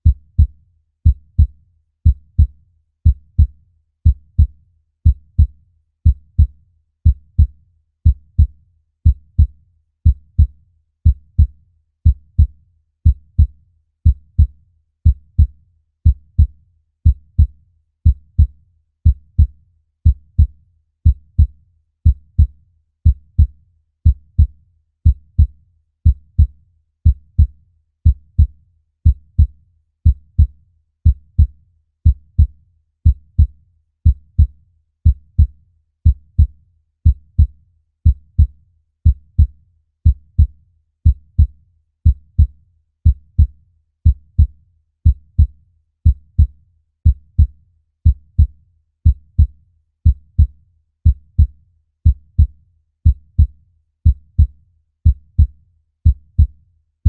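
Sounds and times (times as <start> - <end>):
heartbeat thumps: 54.1 - 54.5, 55.1 - 55.5, 56.1 - 56.6.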